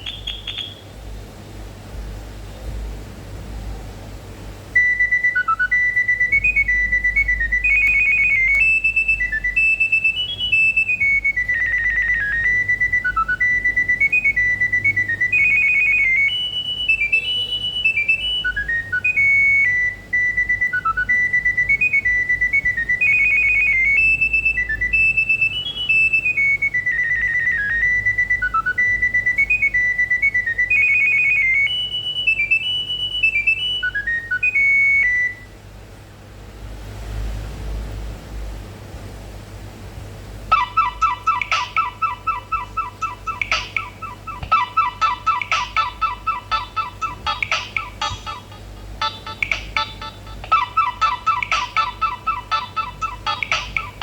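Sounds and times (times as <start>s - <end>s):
phone ringtone melody: 0.0s - 0.8s, 4.8s - 26.5s, 40.5s - 54.0s.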